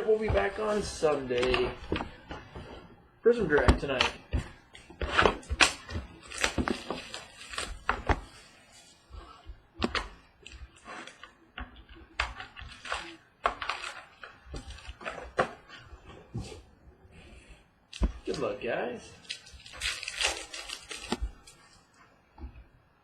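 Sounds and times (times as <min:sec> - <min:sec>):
rustling of cardboard and wrappers: 0:00.0 - 0:22.1
card packs being opened: 0:05.1 - 0:08.4, 0:19.2 - 0:21.6.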